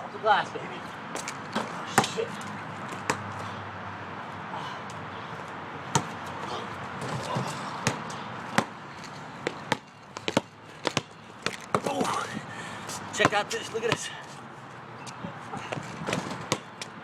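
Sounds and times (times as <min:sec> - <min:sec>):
basketball bouncing: 0:05.9 - 0:06.2, 0:07.0 - 0:08.8, 0:09.4 - 0:11.9, 0:13.2 - 0:14.1, 0:15.8 - 0:16.8.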